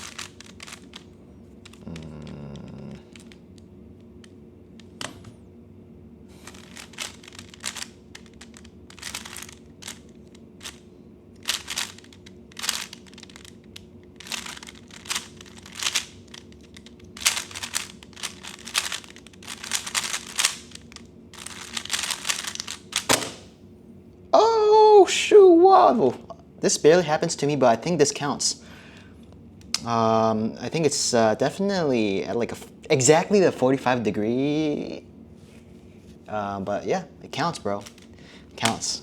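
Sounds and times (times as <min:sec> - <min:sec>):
plastic puzzle cube clicking turns: 0:00.0 - 0:03.4, 0:06.5 - 0:10.8, 0:11.4 - 0:23.1, 0:37.8 - 0:38.8.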